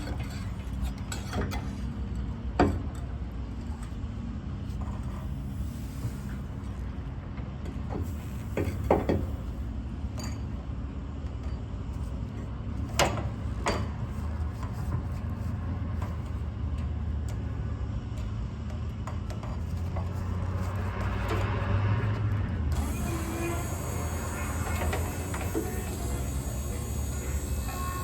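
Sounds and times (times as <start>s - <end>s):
motor humming: 22.7s - 28.0s.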